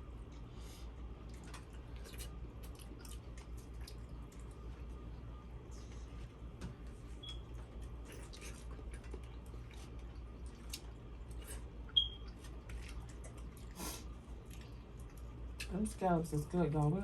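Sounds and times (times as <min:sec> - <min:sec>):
chewing: 0:01.0 - 0:05.2, 0:07.2 - 0:15.8.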